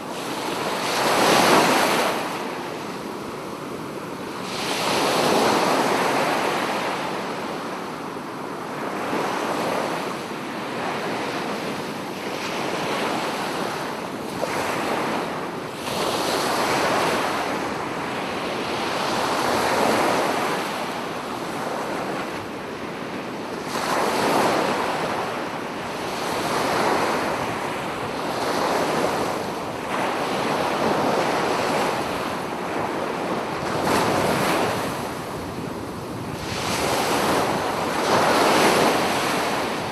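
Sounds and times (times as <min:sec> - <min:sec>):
sea waves breaking on beach: 0:00.0 - 0:39.9
wind buffeting microphone: 0:25.8 - 0:39.9.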